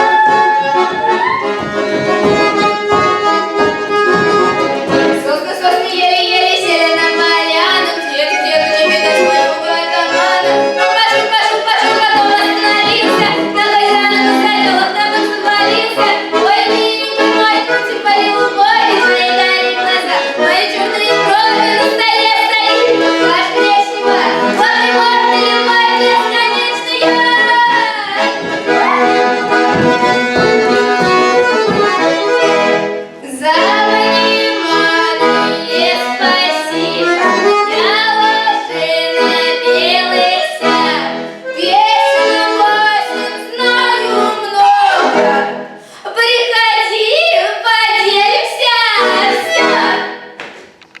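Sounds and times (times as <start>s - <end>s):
accordion: 0.0s - 51.0s
child singing folk-style song: 5.0s - 31.8s, 33.2s - 50.2s.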